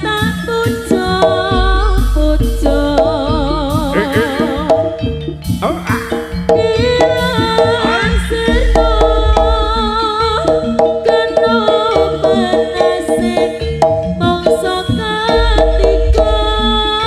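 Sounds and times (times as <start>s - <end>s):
hand drums beating: 0.9s - 17.0s
ensemble melody over sound system: 3.0s - 10.9s.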